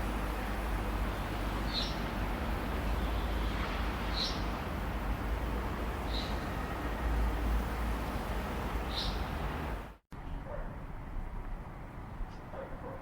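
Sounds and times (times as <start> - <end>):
open-air hiss: 0.0 - 10.0
distant traffic rumble: 0.0 - 13.0
bird chirping: 8.9 - 9.3.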